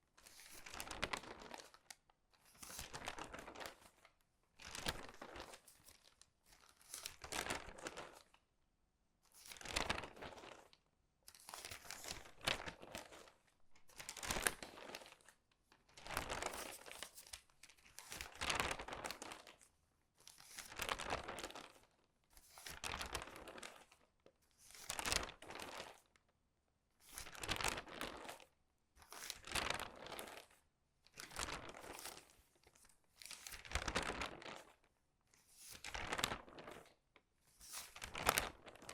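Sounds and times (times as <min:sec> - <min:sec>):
newspaper pages turning: 0:29.3 - 0:30.5, 0:31.2 - 0:32.4, 0:33.2 - 0:34.7, 0:35.7 - 0:36.9, 0:37.6 - 0:38.9.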